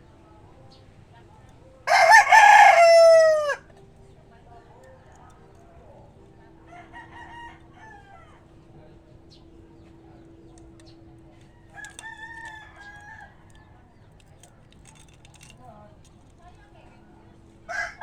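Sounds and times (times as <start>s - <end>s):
rooster crowing: 1.9s - 3.7s, 6.7s - 8.4s, 17.7s - 18.0s.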